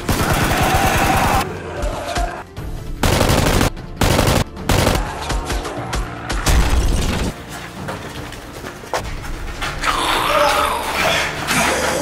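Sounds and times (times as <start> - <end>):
background music: 0.0 - 12.0
automatic gunfire bursts: 3.0 - 5.0.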